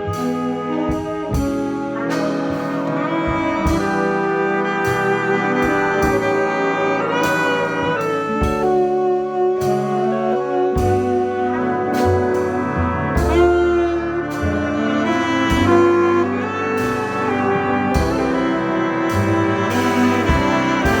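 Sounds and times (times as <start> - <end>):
big band jazz ballad: 0.0 - 21.0.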